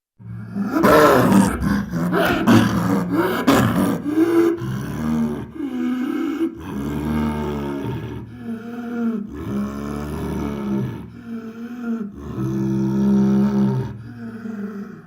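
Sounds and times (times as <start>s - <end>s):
leopard growling and roaring: 0.2s - 5.9s, 12.2s - 14.2s.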